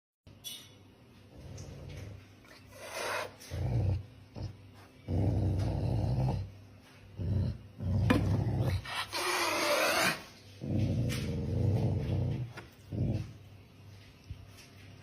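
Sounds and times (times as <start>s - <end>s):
cat growling low: 1.4s - 6.5s, 7.2s - 13.4s.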